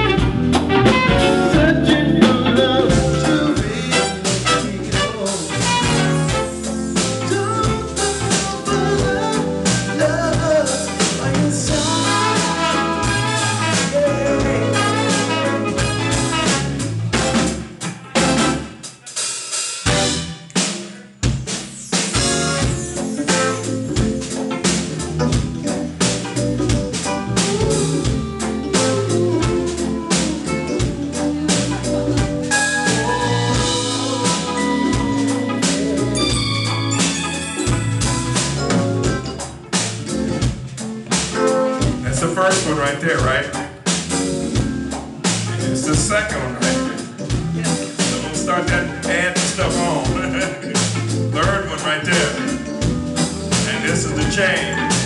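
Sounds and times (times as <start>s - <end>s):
drum kit hits: 0.0s - 55.0s
live band playing: 0.0s - 55.0s.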